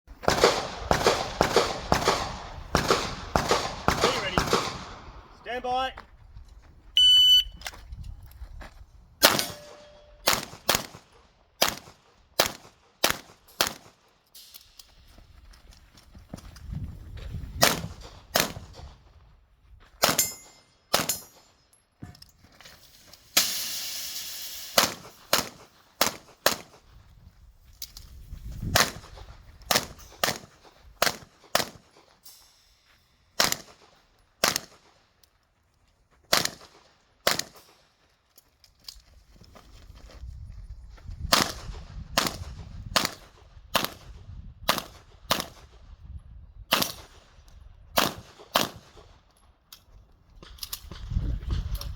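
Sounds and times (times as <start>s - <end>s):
handgun shots: 9.2s - 11.0s, 17.6s - 18.7s, 20.0s - 21.4s, 24.8s - 26.8s, 33.4s - 33.7s.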